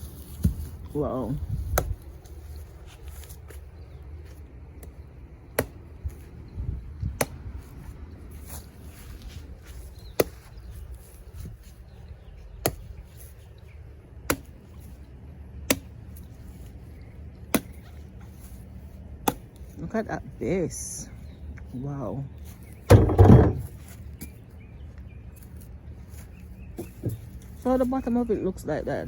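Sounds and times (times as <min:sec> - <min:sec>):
axe chopping tree trunk: 0:00.4 - 0:00.7, 0:01.6 - 0:02.3, 0:04.8 - 0:06.3, 0:07.0 - 0:07.6, 0:09.8 - 0:11.1, 0:12.6 - 0:13.2, 0:14.2 - 0:14.8, 0:15.6 - 0:16.3, 0:17.4 - 0:18.6, 0:19.2 - 0:19.8, 0:22.7 - 0:24.4.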